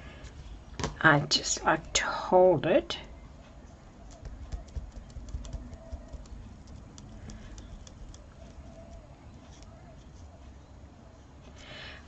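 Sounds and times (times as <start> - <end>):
paper handling clicks and rubs: 4.1 - 10.2.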